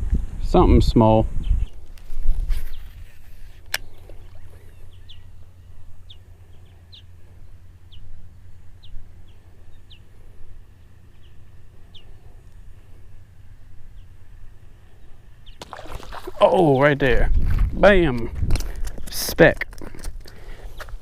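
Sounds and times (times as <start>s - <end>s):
steady low rumble: 0.0s - 19.2s
bird chirping: 3.8s - 12.6s, 13.8s - 16.1s.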